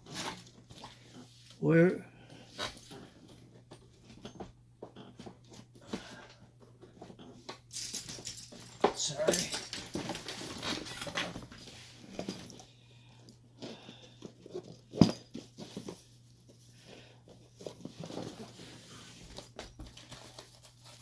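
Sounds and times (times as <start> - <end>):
tools clicking and rattling: 7.5 - 12.7, 14.2 - 16.0.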